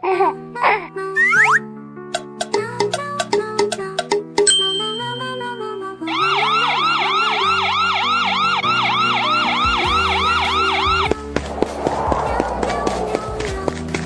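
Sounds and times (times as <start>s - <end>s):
background music: 0.0s - 14.0s
siren wailing: 6.1s - 11.3s.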